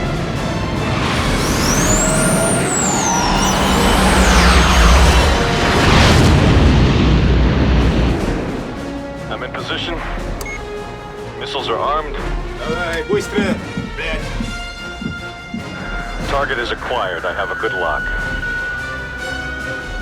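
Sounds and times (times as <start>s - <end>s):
jet engine whines: 0.0s - 9.8s, 15.6s - 20.0s
deep jet rumble: 0.0s - 20.0s
orchestral film score: 0.0s - 20.0s.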